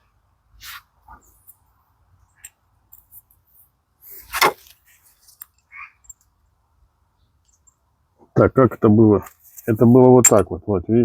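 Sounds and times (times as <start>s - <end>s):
metal scraping clunk: 4.2s - 4.7s.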